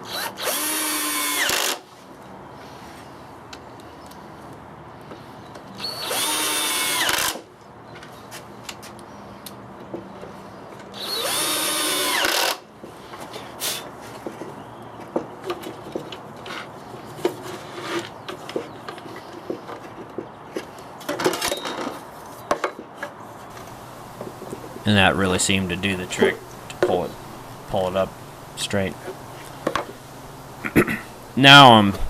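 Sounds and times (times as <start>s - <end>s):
power drill drilling into wood: 0.0s - 1.8s, 5.8s - 7.4s, 11.0s - 12.6s
handling clicks and knocks: 14.1s - 24.8s.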